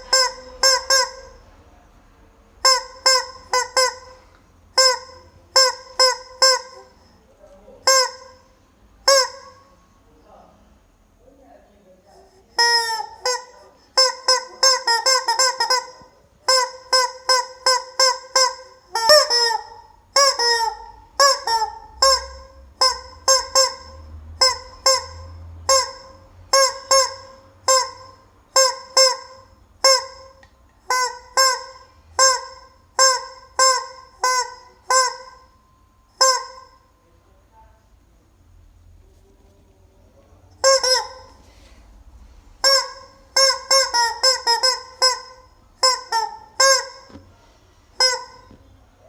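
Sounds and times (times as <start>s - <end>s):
rubber chicken squawking: 12.5s - 30.2s, 40.6s - 41.4s, 42.6s - 47.2s.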